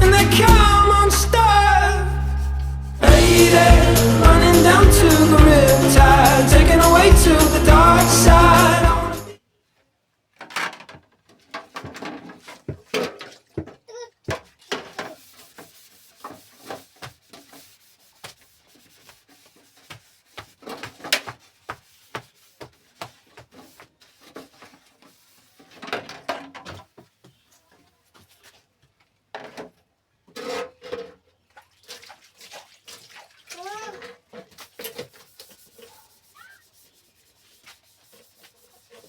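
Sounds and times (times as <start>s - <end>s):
rubbing and scraping: 0.0s - 9.3s, 10.5s - 13.3s, 14.4s - 27.1s, 30.3s - 31.2s, 34.0s - 39.0s
knocks and clicks of objects handled: 10.4s - 15.2s.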